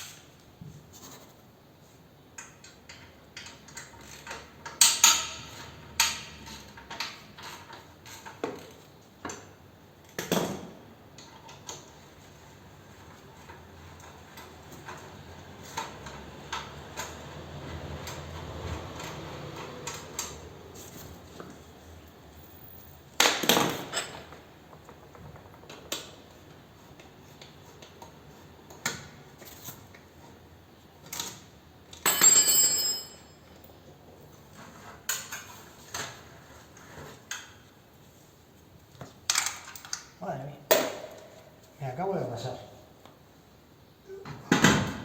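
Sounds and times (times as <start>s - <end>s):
tools and metal parts clinking: 23.4s - 25.6s, 31.0s - 33.8s.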